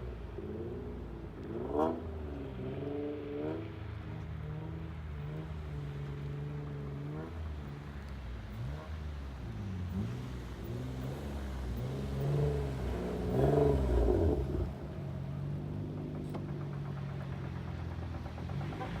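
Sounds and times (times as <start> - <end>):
car exhaust revving: 9.8 - 19.0.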